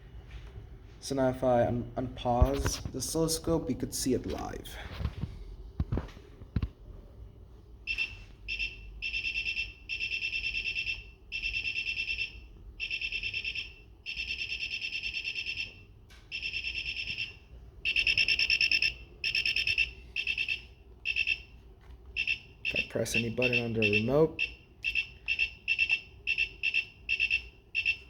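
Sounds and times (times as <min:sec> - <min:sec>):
buzzer pulsing tone: 0:07.9 - 0:17.3, 0:17.9 - 0:21.5, 0:22.2 - 0:28.0.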